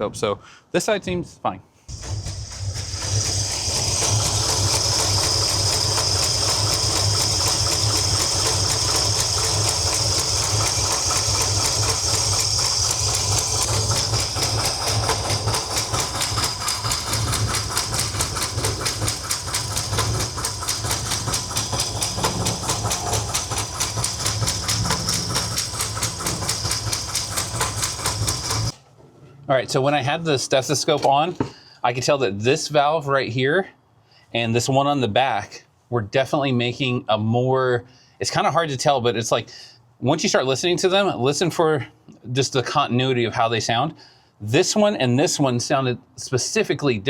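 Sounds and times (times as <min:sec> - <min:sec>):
steady hiss: 0:01.9 - 0:28.7
engine valvetrain ticking: 0:01.9 - 0:28.8.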